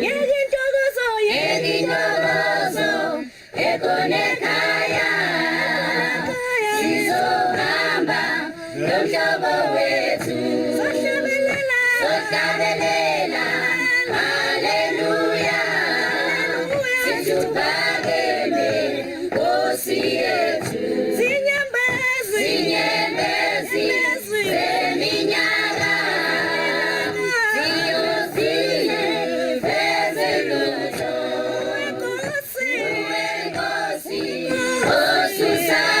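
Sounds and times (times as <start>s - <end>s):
choir singing in harmony: 0.0s - 36.0s.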